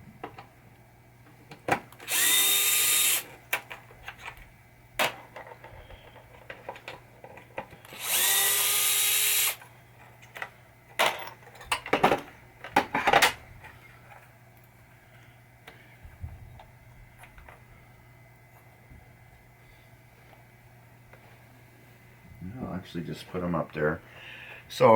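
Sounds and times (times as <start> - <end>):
cordless power driver: 2.0 - 3.3, 7.8 - 9.6.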